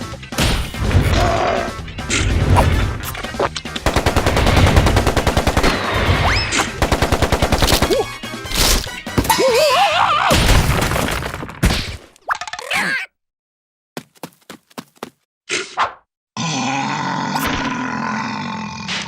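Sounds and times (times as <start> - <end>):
cartoon voice squeal: 9.3 - 10.4, 12.6 - 13.1.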